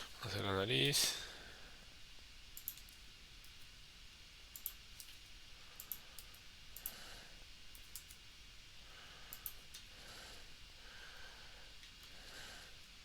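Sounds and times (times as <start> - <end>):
low steady hiss: 0.0 - 13.0
computer mouse clicks: 2.5 - 3.6, 4.5 - 5.2, 5.8 - 7.0, 7.7 - 8.2, 9.3 - 9.9.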